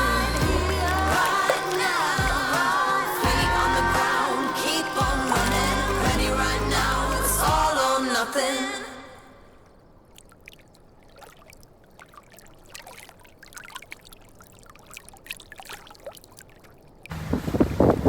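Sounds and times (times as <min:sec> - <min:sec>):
water trickling and splashing: 0:00.0 - 0:08.4, 0:09.5 - 0:18.0
wind noise on microphone: 0:17.1 - 0:18.0.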